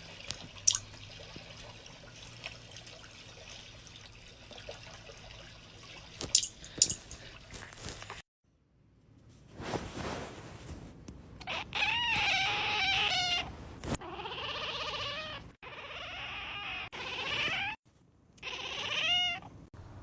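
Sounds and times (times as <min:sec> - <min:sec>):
high-pitched animal cries: 0:11.4 - 0:17.8, 0:18.4 - 0:19.5.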